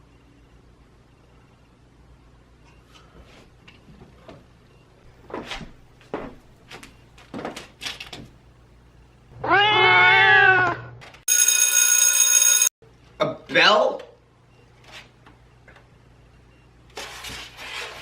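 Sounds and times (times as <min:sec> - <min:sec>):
cat meowing: 0:09.4 - 0:10.9
bell ringing: 0:11.3 - 0:12.8.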